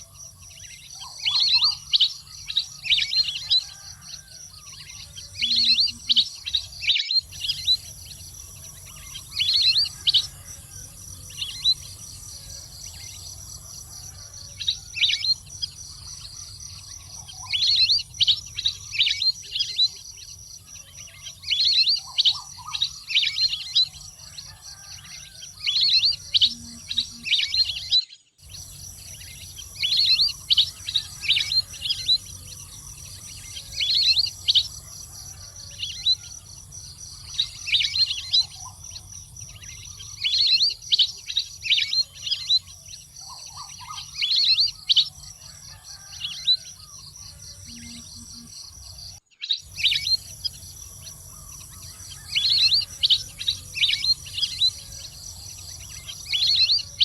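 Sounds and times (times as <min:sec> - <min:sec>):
high insect-like hum: 0:00.0 - 0:57.0
waterbird chirping calls: 0:25.7 - 0:36.4, 0:49.4 - 0:57.0.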